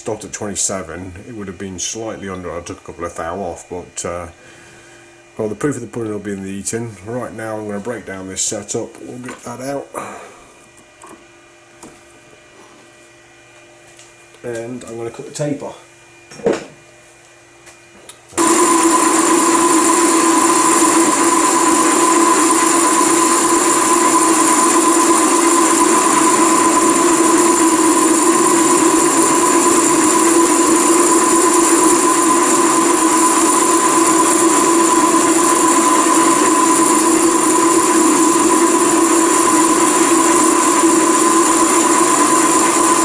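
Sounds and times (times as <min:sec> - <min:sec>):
metal lathe running: 0:18.4 - 0:43.0.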